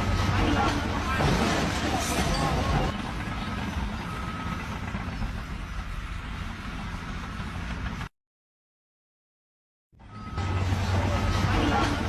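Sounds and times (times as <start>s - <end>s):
outdoor noise: 0.0s - 8.1s, 9.9s - 12.0s
vehicle engine running: 0.0s - 8.1s.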